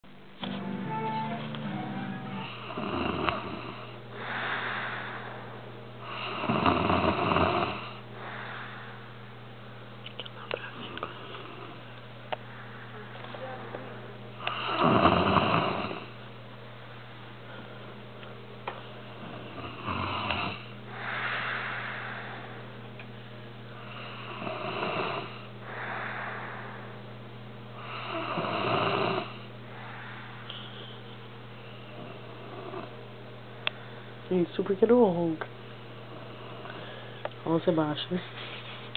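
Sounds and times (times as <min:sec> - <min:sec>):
steady low hum: 0:00.0 - 0:38.9
music: 0:00.4 - 0:02.7
pet snoring: 0:02.4 - 0:05.2, 0:06.0 - 0:08.7, 0:14.4 - 0:16.2, 0:19.2 - 0:22.4, 0:23.8 - 0:26.4, 0:27.8 - 0:29.5, 0:31.9 - 0:33.0
cat breathing softly: 0:04.2 - 0:06.4, 0:08.2 - 0:09.3, 0:20.9 - 0:24.4, 0:25.3 - 0:27.1, 0:29.3 - 0:32.7.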